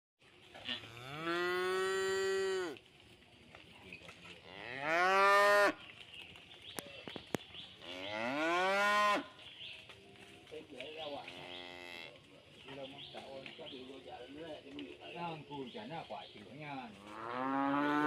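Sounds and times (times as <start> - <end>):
cows mooing: 0.7 - 2.8, 4.4 - 5.8, 7.8 - 9.3, 17.0 - 18.0.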